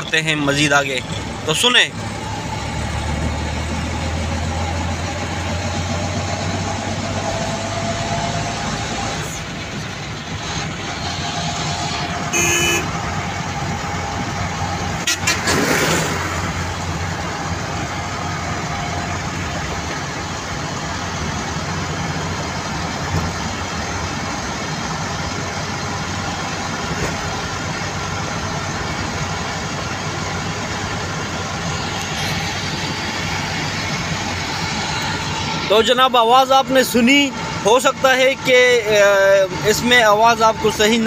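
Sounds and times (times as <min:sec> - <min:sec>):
car engine and road noise: 0:00.0 - 0:41.0
car horn toot: 0:12.2 - 0:13.0, 0:15.0 - 0:15.4
loud rush of noise: 0:30.6 - 0:41.0
gearbox whine: 0:31.5 - 0:41.0.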